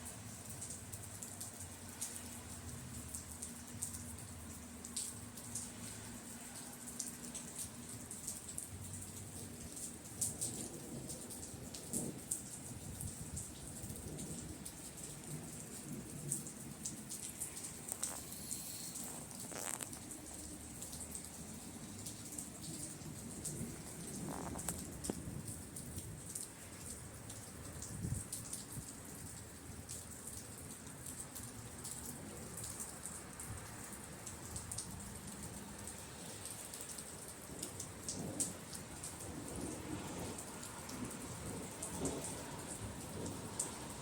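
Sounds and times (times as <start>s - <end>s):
steady rain: 0.0s - 44.0s
distant thunder rumbles: 38.0s - 44.0s.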